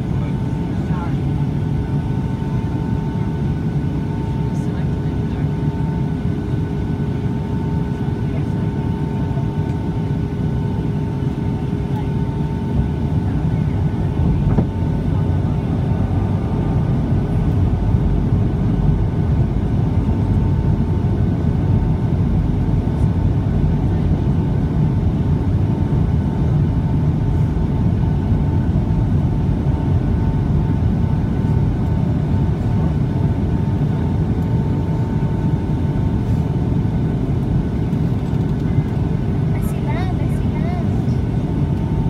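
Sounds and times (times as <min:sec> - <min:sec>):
airliner cabin engine rush: 0:00.0 - 0:42.0
steady hum tones: 0:12.2 - 0:42.0.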